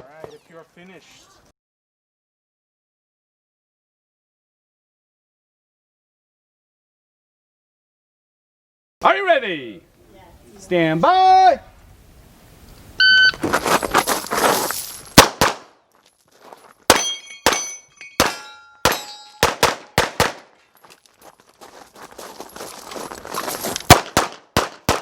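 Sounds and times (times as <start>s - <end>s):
handgun shots: 15.2s - 15.7s, 16.9s - 20.5s, 23.9s - 25.0s
steel targets ringing: 16.9s - 20.0s.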